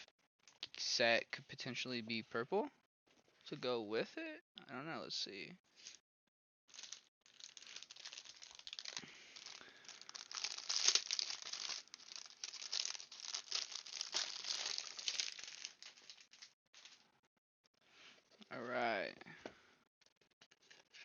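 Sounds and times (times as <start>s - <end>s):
plastic packaging crinkling: 6.7s - 17.0s.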